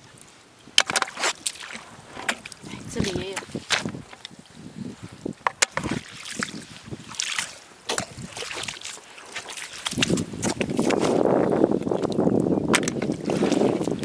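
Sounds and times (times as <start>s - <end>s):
sand and shells rustling: 0.2s - 12.2s
wind buffeting microphone: 1.8s - 7.2s, 7.9s - 8.8s, 9.7s - 14.0s.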